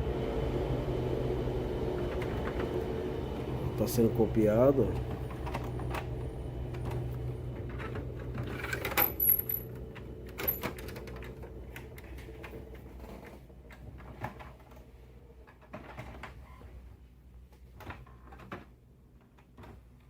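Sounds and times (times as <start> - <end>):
printer motor hum: 0.0 - 8.4.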